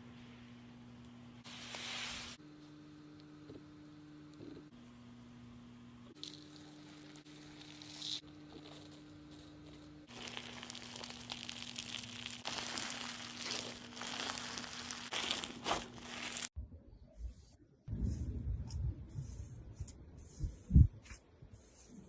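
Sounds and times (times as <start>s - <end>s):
slime crackling and crinkling: 6.2s - 16.6s.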